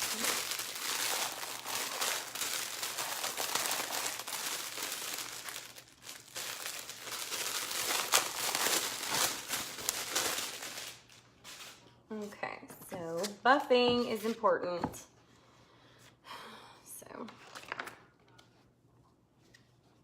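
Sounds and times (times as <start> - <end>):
plastic sheet crinkling: 0.0 - 11.8.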